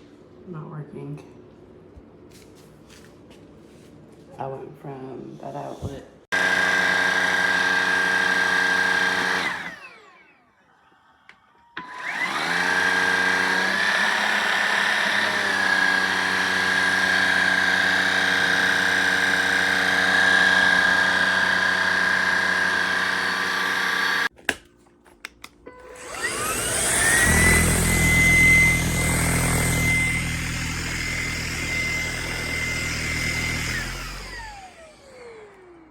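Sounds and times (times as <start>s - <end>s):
vacuum cleaner motor whining: 6.3s - 10.6s, 11.8s - 24.3s, 25.7s - 35.9s.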